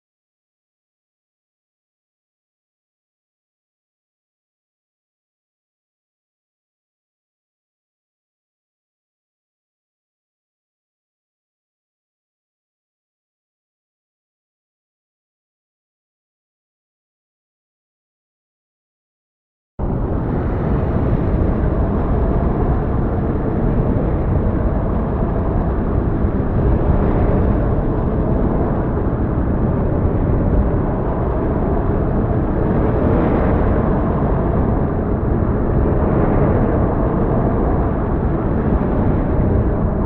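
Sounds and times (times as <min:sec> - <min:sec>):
low rushing snowfall ambience: 0:20.0 - 0:40.0.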